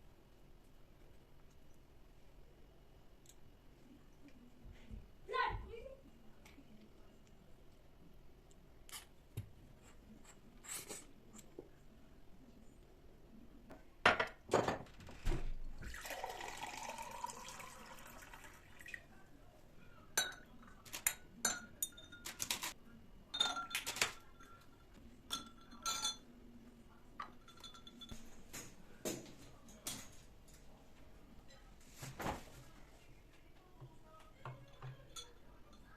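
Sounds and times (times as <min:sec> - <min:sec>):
dishes knocking: 0:14.1 - 0:14.9
liquid pouring: 0:15.8 - 0:19.2
glassware clinking: 0:20.2 - 0:26.3, 0:27.2 - 0:28.3, 0:34.4 - 0:35.9.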